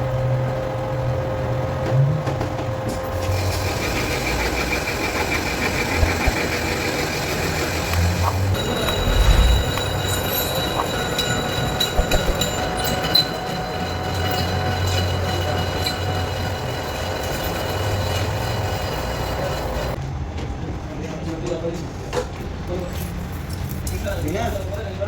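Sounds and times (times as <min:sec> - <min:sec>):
machine low hum: 0:00.0 - 0:20.0
lathe cutting tool squealing: 0:02.9 - 0:20.0.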